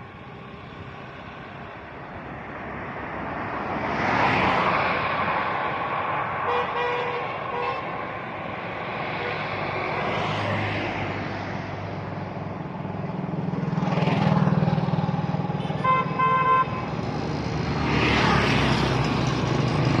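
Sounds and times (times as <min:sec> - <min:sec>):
passing vehicles: 0:00.0 - 0:20.0
car horn tooting: 0:15.6 - 0:16.9.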